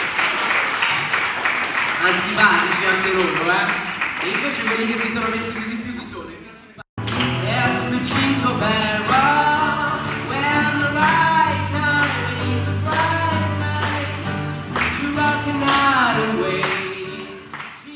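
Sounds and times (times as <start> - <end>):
person singing a melody: 7.4 - 17.9.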